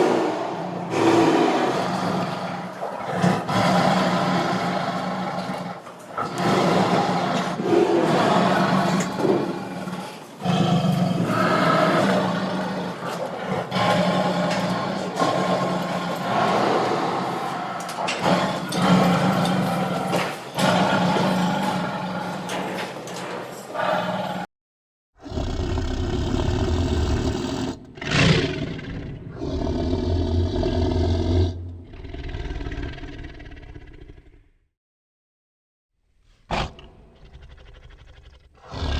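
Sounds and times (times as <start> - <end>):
tiger roaring and growling: 0.0 - 24.5, 25.2 - 34.6, 36.4 - 38.9.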